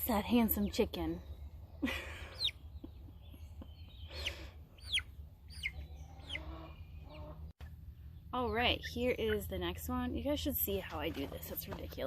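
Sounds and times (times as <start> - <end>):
chicks peeping: 2.2 - 7.8.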